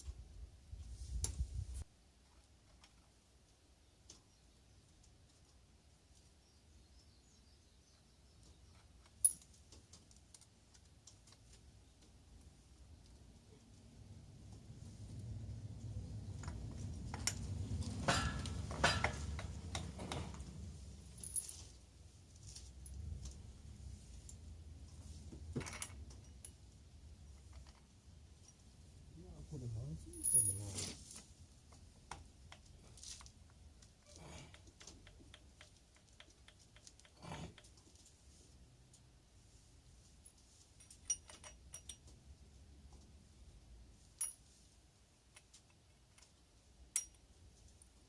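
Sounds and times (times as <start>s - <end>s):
clicks and taps of metal parts: 16.4s - 20.5s, 34.5s - 37.8s, 40.8s - 42.2s, 45.3s - 47.2s
metal tools clinking and tapping: 16.4s - 20.5s, 25.4s - 26.6s, 30.1s - 30.9s, 40.2s - 42.2s, 46.9s - 48.0s.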